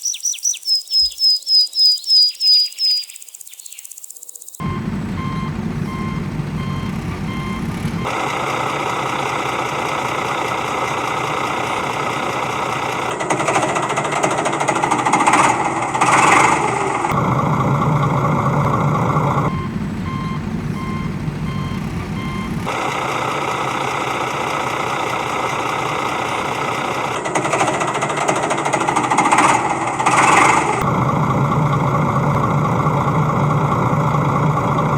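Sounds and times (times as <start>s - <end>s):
high chirps: 0.0s - 7.8s
reversing alarm beeping: 4.6s - 8.3s, 18.7s - 22.9s
heavy vehicle engine running: 4.6s - 34.9s.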